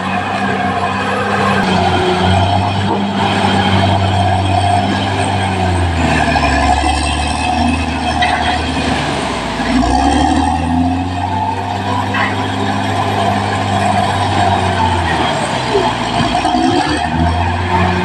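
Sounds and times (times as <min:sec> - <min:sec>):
bulldozer diesel engine running: 0:00.0 - 0:18.0.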